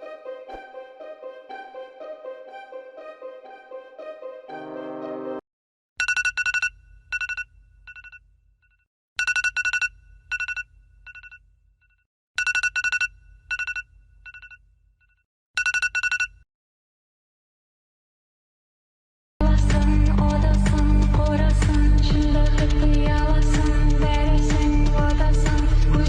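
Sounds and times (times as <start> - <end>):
telephone ringing: 12.4 - 14.6, 15.6 - 16.4.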